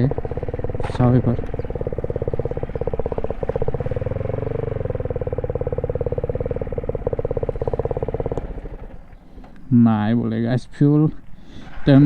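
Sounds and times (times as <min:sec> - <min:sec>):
motorcycle engine idling: 0:00.0 - 0:10.6.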